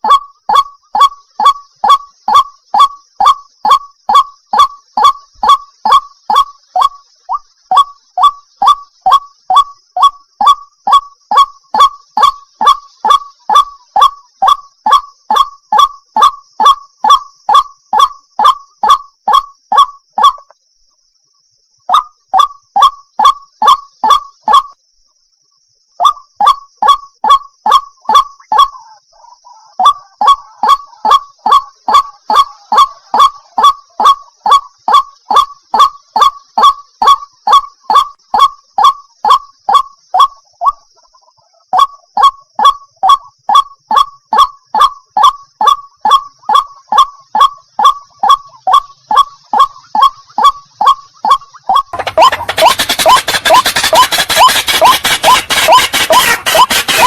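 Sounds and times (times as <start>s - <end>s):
waterhen honking calls: 27.7s - 38.1s, 46.5s - 57.0s.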